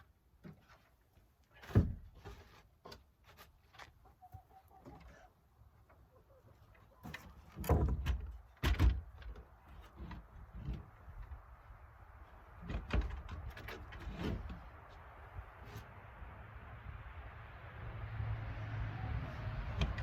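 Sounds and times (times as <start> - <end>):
hollow knocks and thumps: 7.1 - 10.9.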